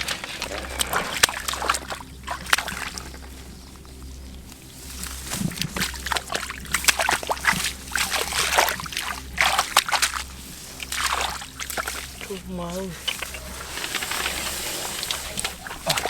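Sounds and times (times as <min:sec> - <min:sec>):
water sloshing and splashing: 0:00.0 - 0:16.0.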